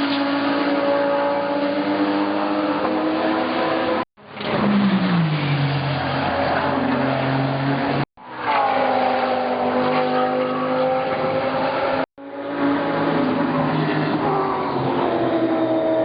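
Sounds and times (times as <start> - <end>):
race car engine at high revs: 0.0 - 16.0.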